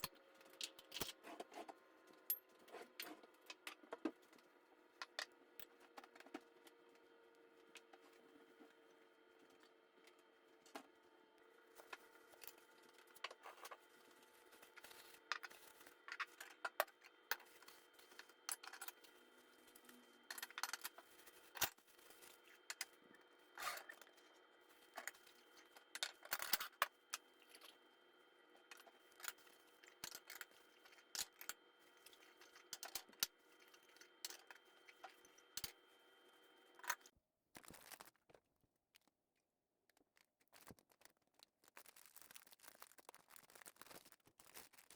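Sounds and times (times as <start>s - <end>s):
kitchen utensils clicking and scraping: 0.0s - 1.7s, 11.8s - 19.2s, 20.3s - 23.0s, 28.7s - 35.8s
faint steady hum: 0.0s - 37.1s.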